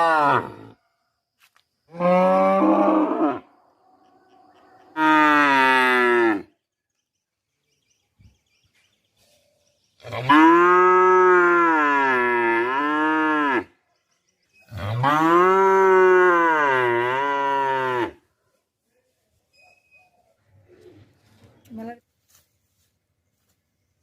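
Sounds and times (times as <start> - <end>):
cow mooing: 1.9 - 3.5, 5.0 - 6.5, 14.8 - 18.2.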